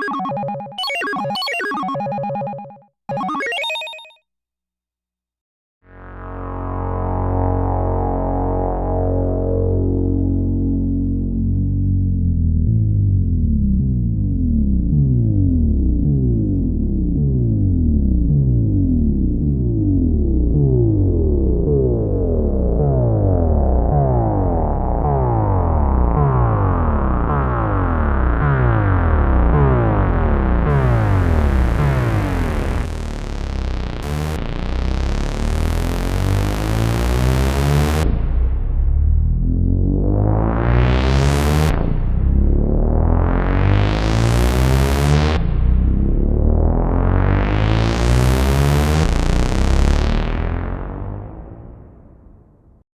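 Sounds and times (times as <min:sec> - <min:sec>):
synthesizer gliding notes: 0:00.0 - 0:04.2, 0:21.6 - 0:43.6
low bass drone: 0:05.9 - 0:52.6.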